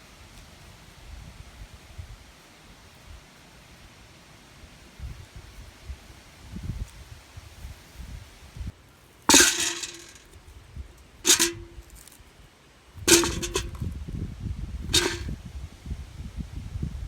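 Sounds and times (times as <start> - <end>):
sharp metallic clangs: 9.3 - 10.3, 11.3 - 12.1, 13.1 - 13.9, 14.9 - 15.3.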